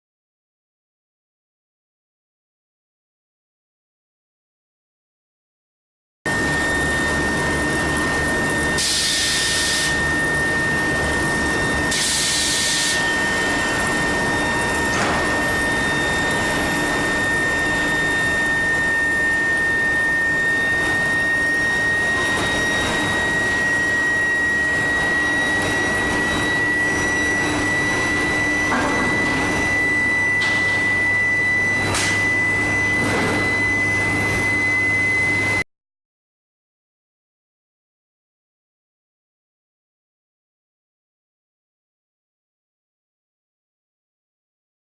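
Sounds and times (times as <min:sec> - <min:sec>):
machine noise: 0:06.3 - 0:35.6
high-pitched induction heater whine: 0:06.3 - 0:35.7.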